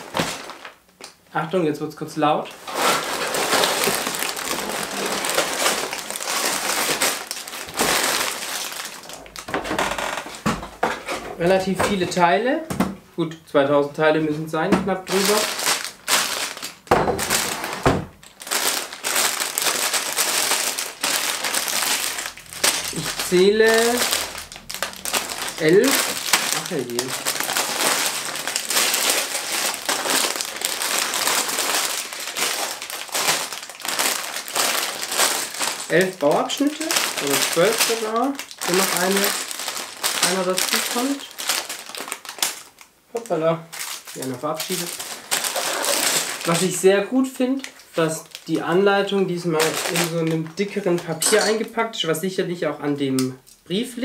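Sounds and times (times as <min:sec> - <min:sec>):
plastic bags crinkling: 0:00.0 - 0:01.2, 0:02.4 - 0:12.4, 0:14.6 - 0:51.8
plastic bricks pouring out: 0:02.6 - 0:09.5, 0:15.1 - 0:42.8, 0:43.7 - 0:46.8, 0:49.5 - 0:51.6.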